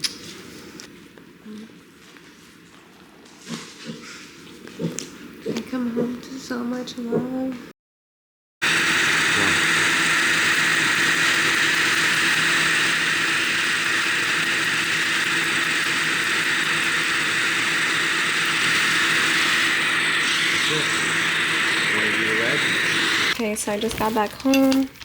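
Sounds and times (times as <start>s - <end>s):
mechanical drone with low hum: 8.6s - 23.4s.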